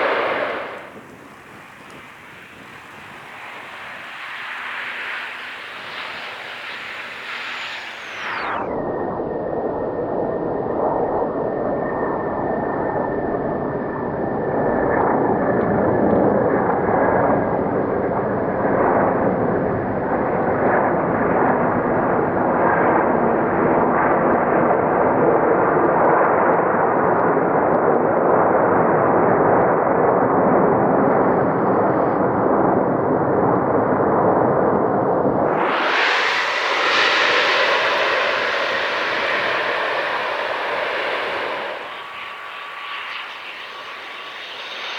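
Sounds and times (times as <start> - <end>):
slowed jet rumbling roar: 0.0 - 8.8, 35.3 - 44.9
faint high whistle: 35.5 - 44.9.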